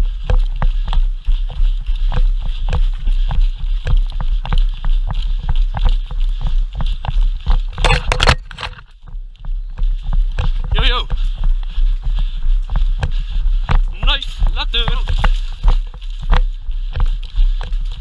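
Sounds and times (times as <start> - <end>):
gear and clothing rustling: 0.0 - 18.0
rapid footsteps: 0.0 - 18.0.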